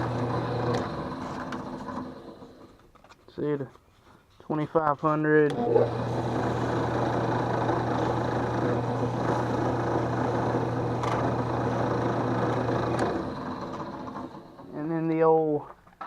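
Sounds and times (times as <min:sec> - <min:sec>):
drill press motor humming: 0:00.0 - 0:02.8, 0:05.5 - 0:14.8.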